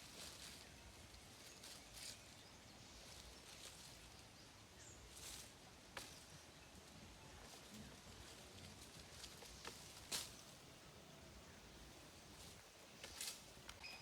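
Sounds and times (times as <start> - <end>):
soft rustles: 0.0 - 4.3, 7.4 - 10.6, 12.3 - 13.8
faint outdoor ambience: 0.0 - 14.0.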